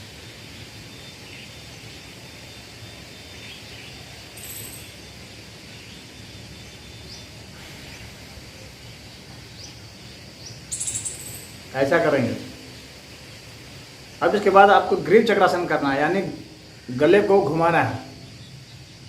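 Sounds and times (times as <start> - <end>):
outdoor background noise: 0.0 - 19.0
soft hiss: 0.0 - 19.0
faint high chirps: 2.4 - 9.8, 10.4 - 13.4.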